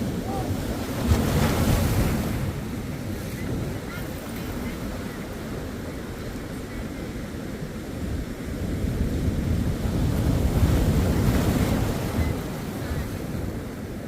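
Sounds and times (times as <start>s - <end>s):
low rumble of sea: 0.0s - 14.0s
wind: 0.0s - 14.0s.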